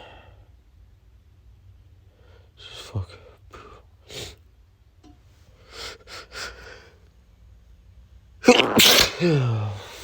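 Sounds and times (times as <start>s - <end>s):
man sniffing: 8.5s - 9.4s
man sneezing: 8.5s - 9.7s.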